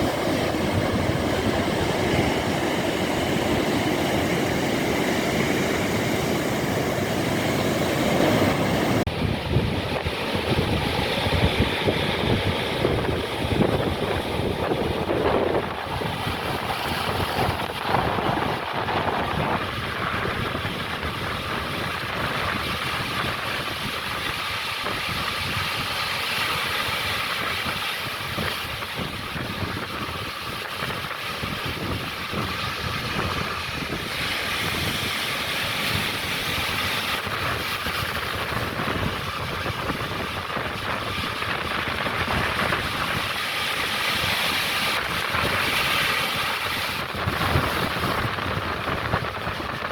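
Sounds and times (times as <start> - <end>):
ocean waves breaking: 0.0 - 49.9.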